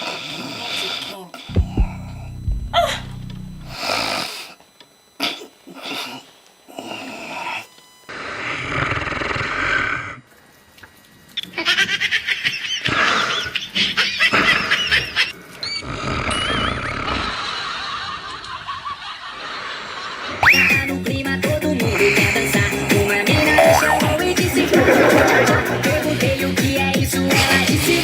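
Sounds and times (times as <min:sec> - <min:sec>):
loud exaggerated snoring: 0:06.8 - 0:10.2, 0:15.7 - 0:17.4.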